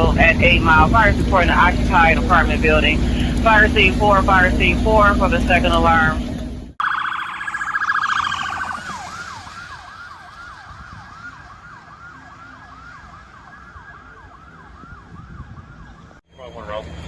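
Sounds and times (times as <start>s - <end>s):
emergency vehicle siren: 6.8s - 16.2s.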